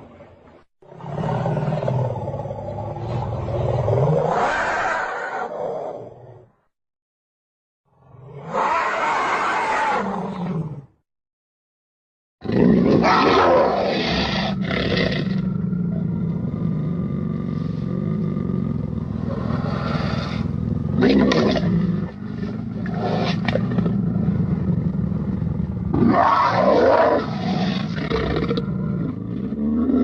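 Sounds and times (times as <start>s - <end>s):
monster roars: 12.5s - 21.9s, 25.9s - 30.0s
monster low growl: 13.7s - 30.0s.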